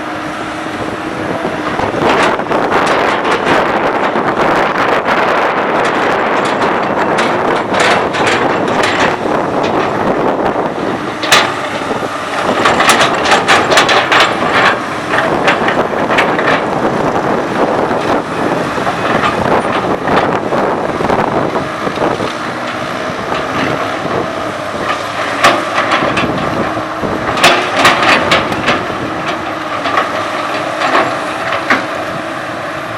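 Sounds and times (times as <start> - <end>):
excavator diesel engine: 0.0 - 32.9
machine knocks and clanks: 5.8 - 32.1.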